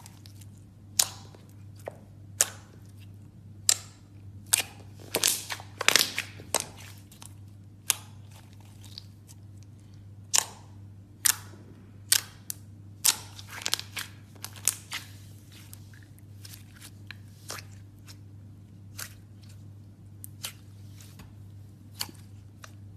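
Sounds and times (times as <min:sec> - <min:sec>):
slime clicking and popping: 0:00.9 - 0:01.4, 0:02.4 - 0:02.8, 0:03.6 - 0:06.8, 0:10.3 - 0:15.0.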